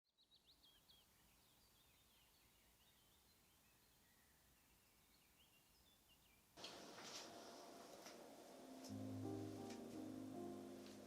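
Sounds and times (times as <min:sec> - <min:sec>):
faint bird chirps: 0:00.1 - 0:06.6
low hiss: 0:00.7 - 0:11.0
music: 0:08.1 - 0:11.0.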